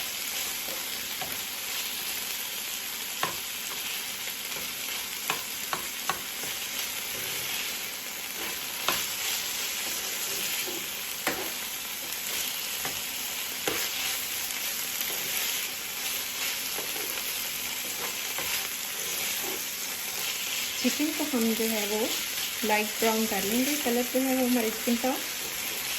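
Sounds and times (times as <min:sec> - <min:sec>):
chicken sizzling in oil: 0:00.0 - 0:25.9
spoon scraping and knocking pan: 0:08.3 - 0:13.0, 0:13.6 - 0:14.2, 0:17.8 - 0:21.2.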